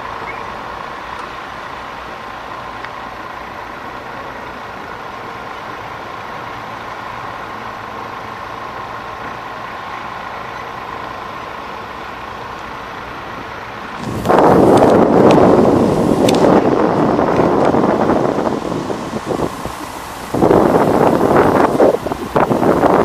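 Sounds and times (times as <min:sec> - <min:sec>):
heavy vehicle engine humming: 0:00.0 - 0:23.0
loud rushing noise: 0:11.2 - 0:23.0.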